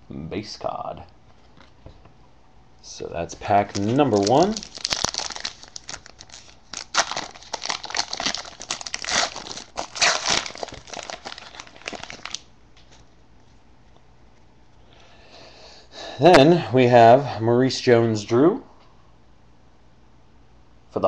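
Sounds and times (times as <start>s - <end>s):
wrapper being torn and crinkled: 3.4s - 13.0s.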